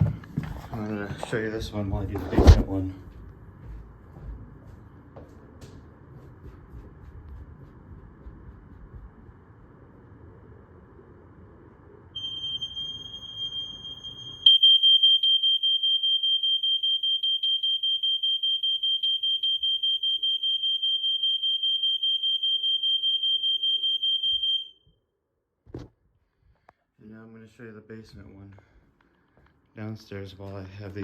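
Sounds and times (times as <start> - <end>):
smoke alarm high-pitched tone: 12.2 - 24.8.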